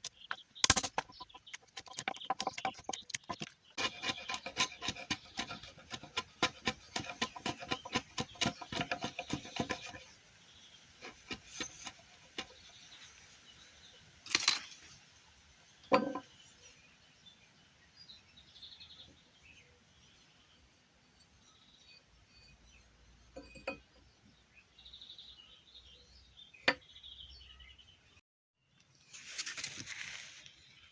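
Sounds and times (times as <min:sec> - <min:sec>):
faint birdsong: 0:00.0 - 0:30.9.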